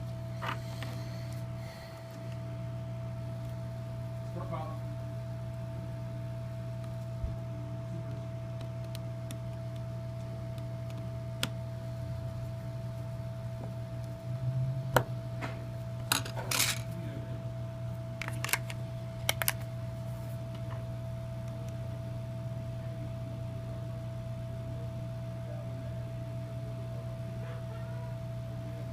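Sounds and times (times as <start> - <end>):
steady electrical hum: 0.0 - 28.9
clicks and taps of phone parts: 18.2 - 19.6.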